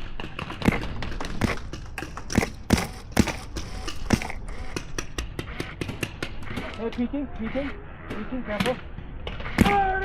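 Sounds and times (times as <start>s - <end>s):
sharp knocks and pops: 0.0s - 6.8s.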